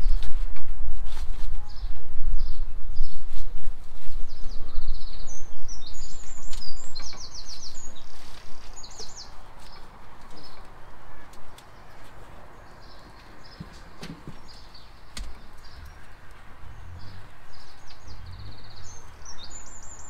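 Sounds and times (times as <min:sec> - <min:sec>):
songbirds trilling: 0:01.6 - 0:20.0
low rumble: 0:15.6 - 0:19.9.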